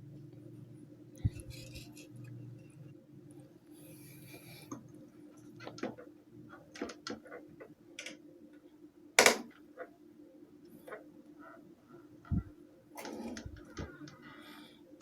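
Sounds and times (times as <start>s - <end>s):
faint steady hum: 0.0s - 15.0s
fan motor parts clicking and tapping: 1.2s - 2.8s, 5.5s - 8.2s, 9.2s - 9.6s.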